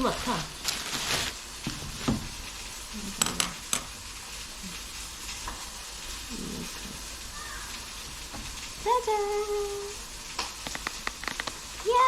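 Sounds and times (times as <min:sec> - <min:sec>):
sharp clicks: 0:10.4 - 0:11.6.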